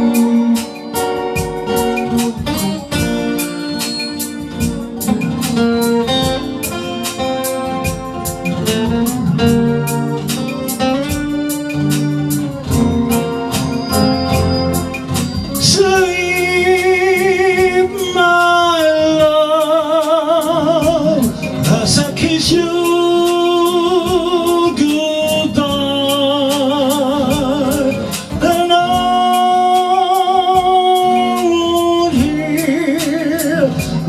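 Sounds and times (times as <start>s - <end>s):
melody line with vibrato: 0.0s - 17.7s
soul ballad band: 0.0s - 34.0s.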